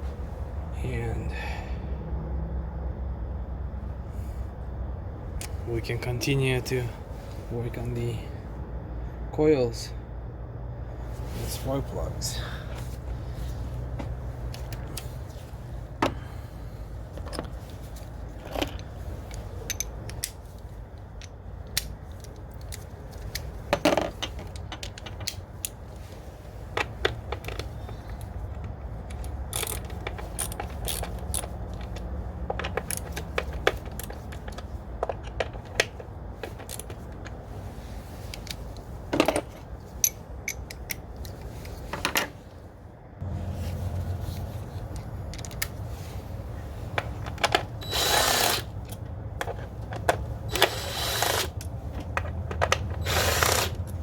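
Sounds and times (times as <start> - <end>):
steady low hum: 0.0 - 54.0
metal tools clinking: 17.2 - 25.4, 26.8 - 37.4, 38.2 - 42.4.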